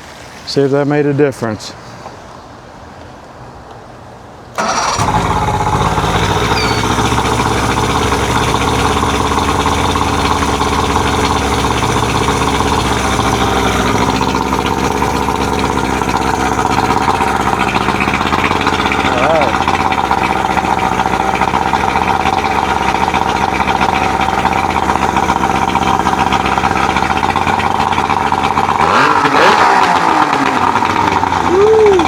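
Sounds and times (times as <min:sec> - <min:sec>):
outboard motor starting and running: 0:04.6 - 0:32.0.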